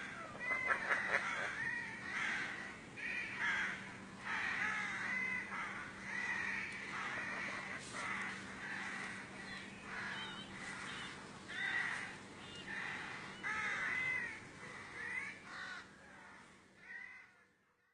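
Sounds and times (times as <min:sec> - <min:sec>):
harsh caw-like animal calls: 0:00.0 - 0:17.6.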